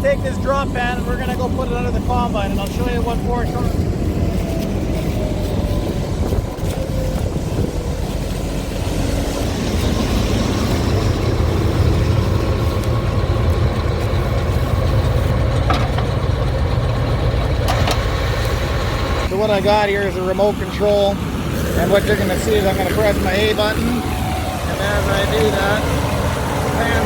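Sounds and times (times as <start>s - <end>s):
combine harvester engine running: 0.0s - 27.0s.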